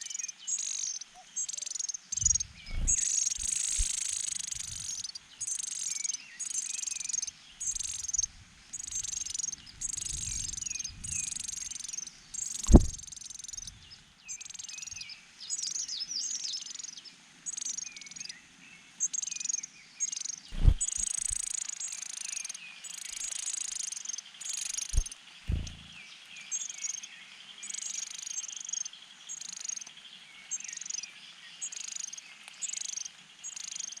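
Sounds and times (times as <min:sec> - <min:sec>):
dull low thumps: 0:02.2 - 0:04.0, 0:12.7 - 0:13.0, 0:20.6 - 0:21.0, 0:25.0 - 0:26.0
nestlings chirping: 0:02.2 - 0:05.0.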